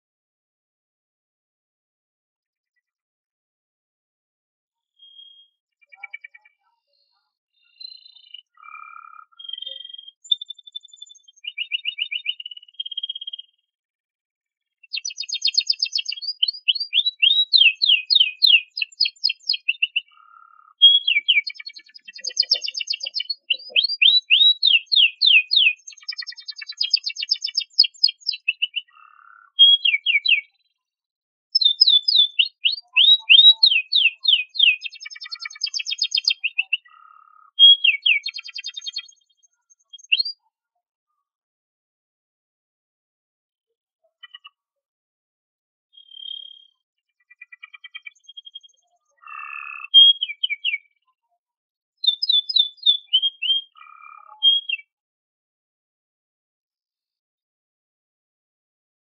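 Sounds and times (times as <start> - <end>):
canary singing trills: 4.9 - 13.6, 14.8 - 30.8, 31.5 - 40.5, 44.1 - 44.6, 46.0 - 51.1, 52.0 - 55.0.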